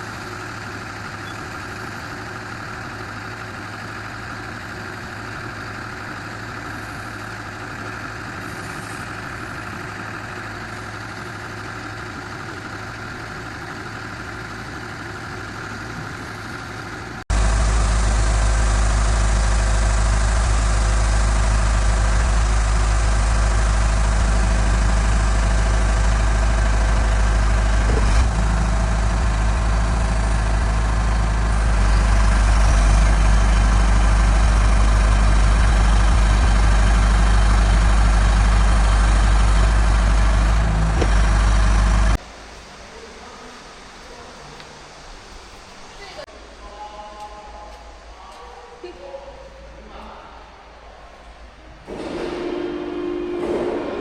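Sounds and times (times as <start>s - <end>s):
deep hum: 0.0s - 42.4s, 50.7s - 54.0s
drilling rig engine running: 0.0s - 46.5s, 51.1s - 54.0s.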